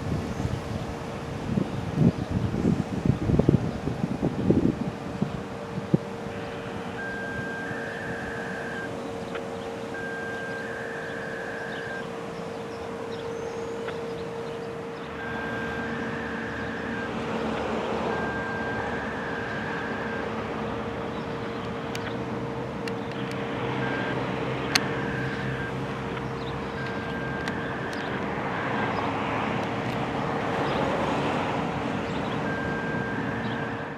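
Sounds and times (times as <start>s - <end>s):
rotating warning siren: 0.0s - 33.9s.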